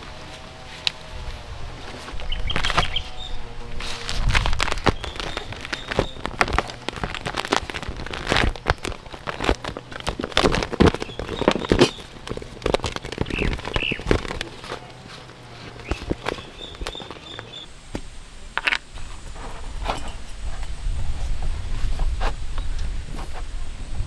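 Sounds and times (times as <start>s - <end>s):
objects being handled: 0.0s - 23.4s.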